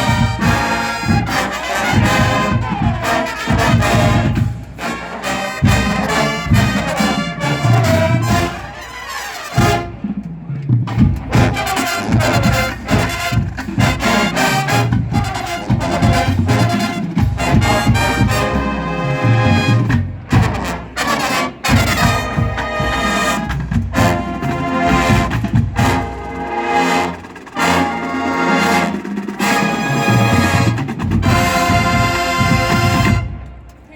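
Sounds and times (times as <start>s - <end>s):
marching band playing: 0.0s - 33.9s.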